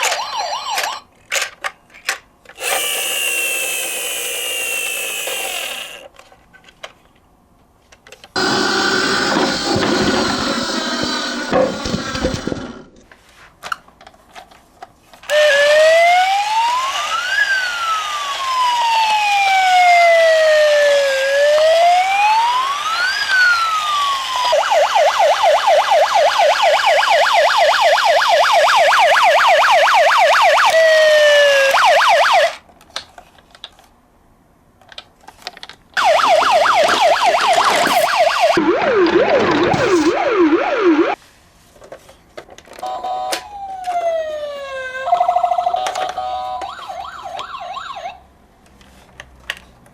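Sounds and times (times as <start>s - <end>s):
electronic police siren wail and yelp: 0.0s - 1.1s, 15.3s - 32.6s, 36.0s - 41.2s, 42.9s - 48.2s.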